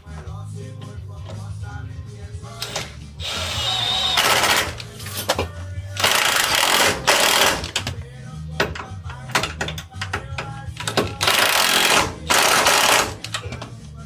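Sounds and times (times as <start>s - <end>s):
music playing: 0.0s - 14.0s
impact wrench running: 2.6s - 5.2s, 6.0s - 7.9s, 10.8s - 13.4s.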